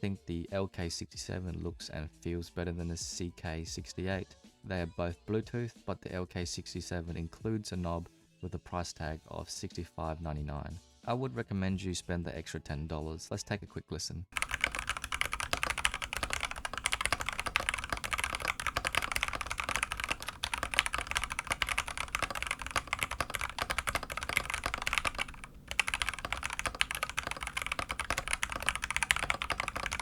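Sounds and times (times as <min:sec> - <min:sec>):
mechanical keyboard typing: 0:14.4 - 0:30.0.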